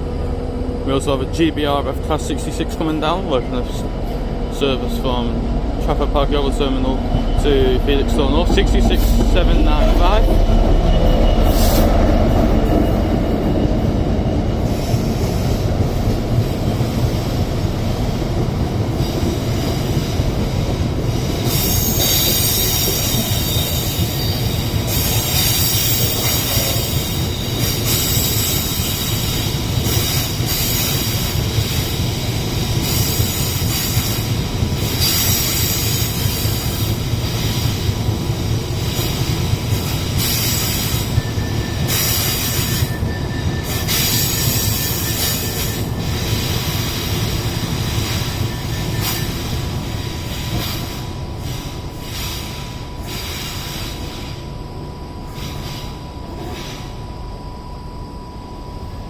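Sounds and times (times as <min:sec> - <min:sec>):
freight train rumbling past: 0:00.0 - 0:57.5
high-pitched wheel squeal: 0:41.1 - 0:45.8.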